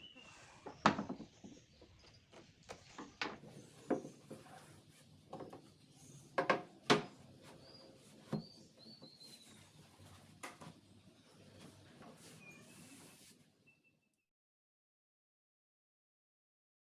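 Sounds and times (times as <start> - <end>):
faint high chirps: 13.6 - 14.2.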